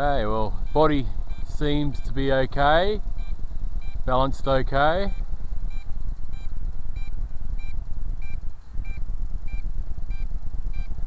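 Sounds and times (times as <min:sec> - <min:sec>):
steady low rumble: 0:00.0 - 0:11.0
short high-pitched beeps: 0:00.6 - 0:02.2, 0:03.2 - 0:04.1, 0:05.0 - 0:10.9.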